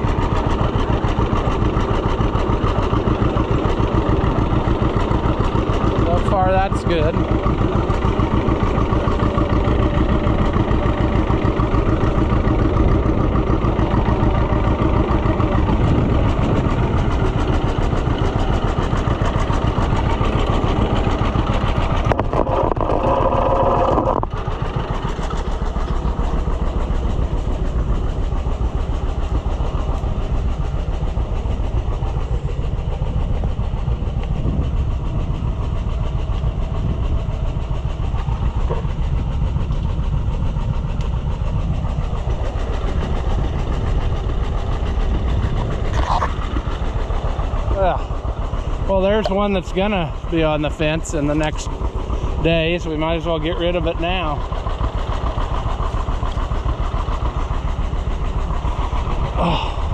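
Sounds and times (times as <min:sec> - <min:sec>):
vehicle engine running: 0:00.0 - 0:59.9.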